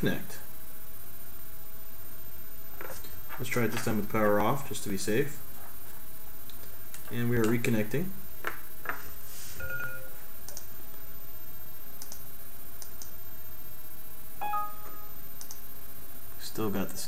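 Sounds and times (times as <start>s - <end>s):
computer mouse clicks: 10.5s - 10.7s, 12.0s - 13.2s, 15.4s - 15.6s
electronic system chimes: 14.4s - 15.2s.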